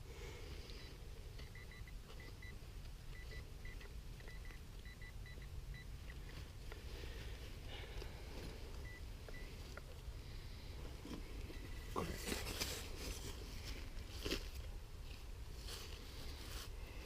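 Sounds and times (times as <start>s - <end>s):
steady low rumble: 0.0s - 17.0s
metal detector beeping: 0.7s - 6.2s, 8.8s - 9.6s, 11.4s - 12.1s.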